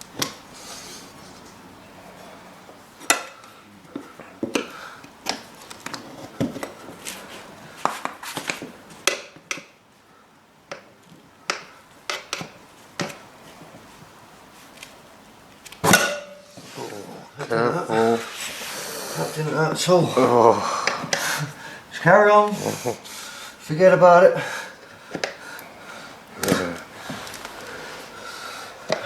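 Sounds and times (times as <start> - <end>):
metal tyre tools clinking: 15.8 - 17.0.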